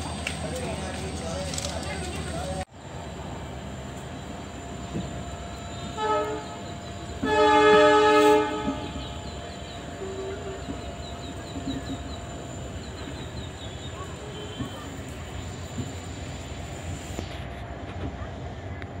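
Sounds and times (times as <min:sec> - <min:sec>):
moving train coach rumble: 0:00.0 - 0:19.0
train horn: 0:05.8 - 0:09.4, 0:10.0 - 0:10.8.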